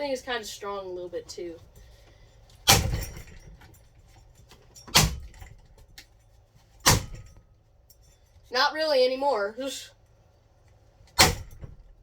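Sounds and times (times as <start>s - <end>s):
fan rattling: 0.0s - 9.8s, 10.8s - 12.0s.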